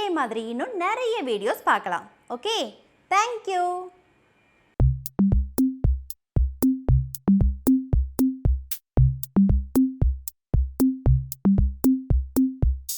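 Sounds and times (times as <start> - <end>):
electronic drum machine beat: 4.8 - 12.9
synth bass notes: 4.8 - 12.9.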